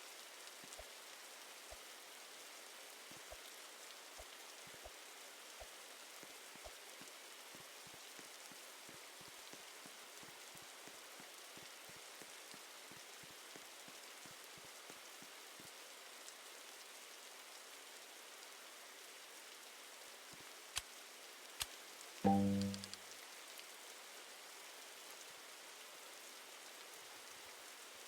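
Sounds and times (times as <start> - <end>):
rain-like patter: 0.0 - 28.0
sharp click: 22.3 - 23.0.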